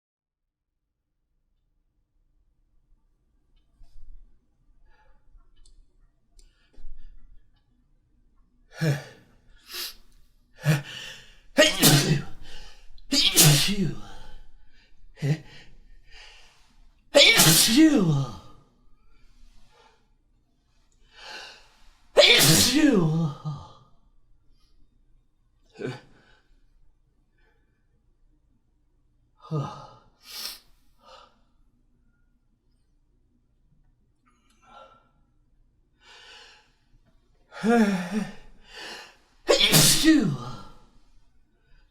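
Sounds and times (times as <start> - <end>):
person gasping before sneeze: 10.6 - 14.5, 17.2 - 18.5, 22.2 - 23.7, 37.6 - 40.8.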